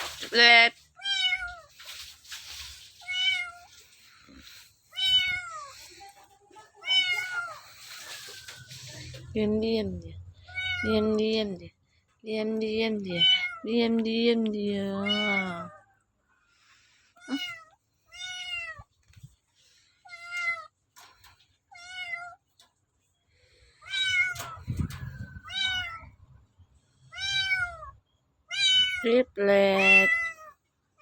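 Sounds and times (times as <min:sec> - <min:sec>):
rustling: 0:00.0 - 0:09.8
kitten meowing: 0:06.8 - 0:07.6, 0:10.5 - 0:11.0, 0:17.2 - 0:18.8, 0:27.1 - 0:29.0.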